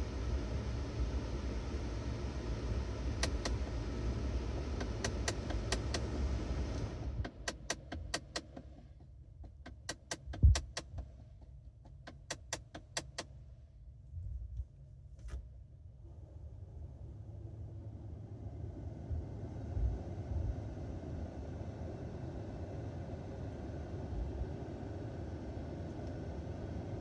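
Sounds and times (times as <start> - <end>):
clicking behind dashboard: 3.1 - 3.9, 4.6 - 11.1, 11.8 - 13.3.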